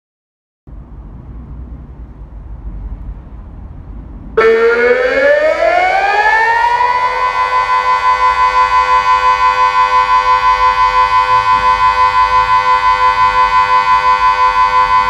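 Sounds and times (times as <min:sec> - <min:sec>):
low rumbling background noise: 0:00.7 - 0:06.3
civil defence siren rising tone: 0:04.3 - 0:15.0.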